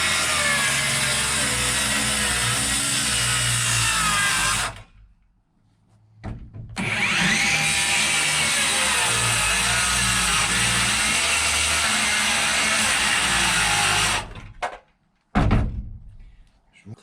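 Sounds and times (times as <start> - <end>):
electric power saw cutting wood: 0.0 - 4.9, 6.8 - 14.4.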